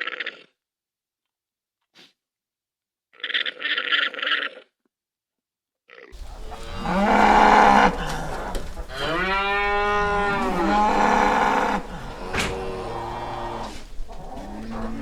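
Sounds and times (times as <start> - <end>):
cow mooing: 6.2 - 15.0.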